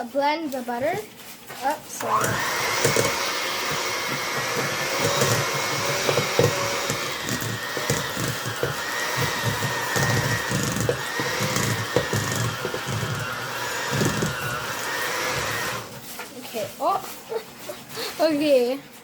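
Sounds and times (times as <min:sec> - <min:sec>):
mixer beaters clattering: 0:01.8 - 0:16.2
electric mixer motor whine: 0:02.0 - 0:16.0.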